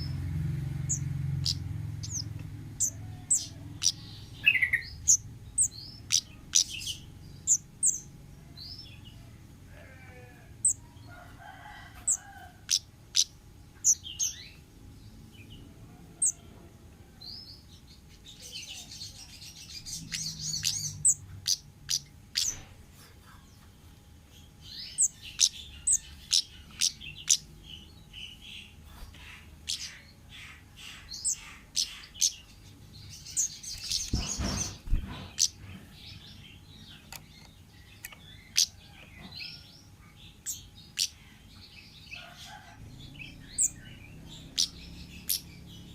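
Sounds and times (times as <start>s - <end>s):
thrush calling: 0.0s - 8.1s.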